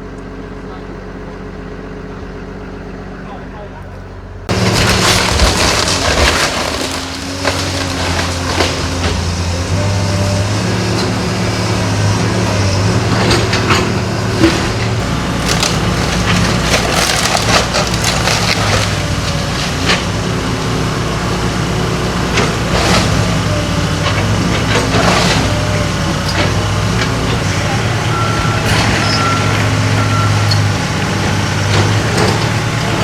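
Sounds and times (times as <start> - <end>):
heavy machine engine running: 0.0 - 33.0
wood cracking and splintering: 4.5 - 33.0.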